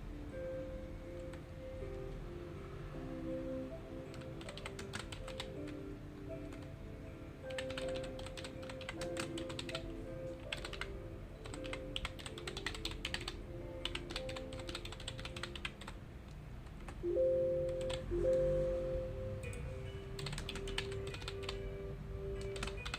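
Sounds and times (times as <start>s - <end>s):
soft background music: 0.0s - 22.9s
typing on keyboard: 4.1s - 6.8s, 7.4s - 16.0s, 16.6s - 18.4s, 19.4s - 21.7s, 22.4s - 22.9s.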